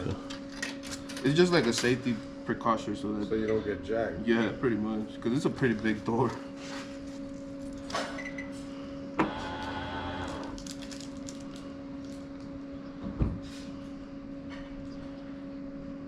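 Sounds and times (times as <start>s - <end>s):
steady machine hum: 0.0s - 16.0s
small electric motor whining: 9.2s - 10.8s.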